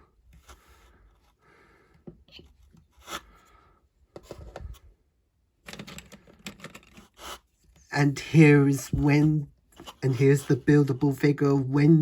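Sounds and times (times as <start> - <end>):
plastic pieces clicking and rattling: 5.6 - 7.1.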